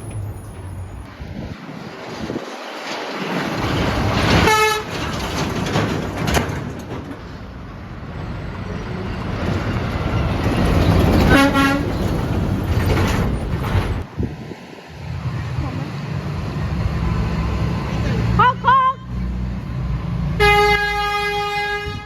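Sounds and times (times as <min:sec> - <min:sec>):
passing traffic: 0:00.0 - 0:22.0
truck horn blasts: 0:04.4 - 0:04.9, 0:11.3 - 0:12.0, 0:18.3 - 0:19.3, 0:20.4 - 0:22.0.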